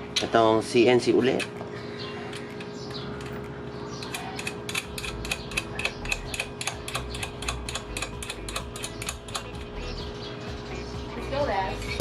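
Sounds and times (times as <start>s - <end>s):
ratchet wrench clicking: 3.2s - 9.6s.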